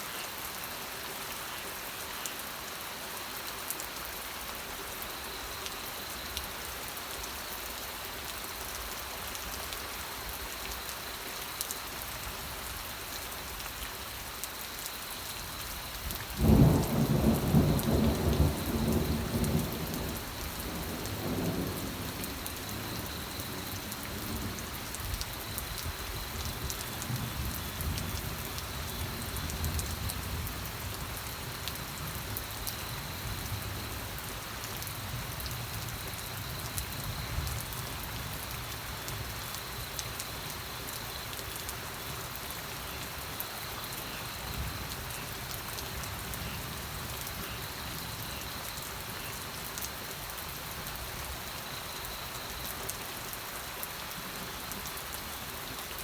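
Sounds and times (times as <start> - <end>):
steady rain falling: 0.0 - 56.0
thunder clap rumbling: 16.4 - 24.7.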